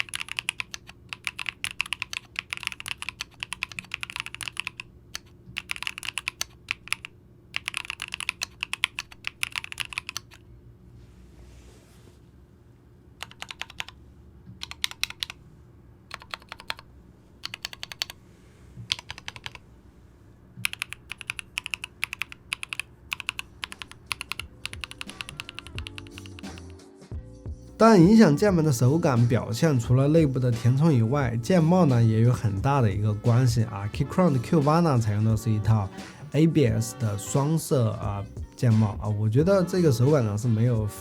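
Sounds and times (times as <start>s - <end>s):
mechanical keyboard typing: 0.0s - 10.4s, 13.2s - 14.0s, 14.6s - 15.4s, 16.1s - 18.2s, 18.9s - 19.6s, 20.6s - 26.8s.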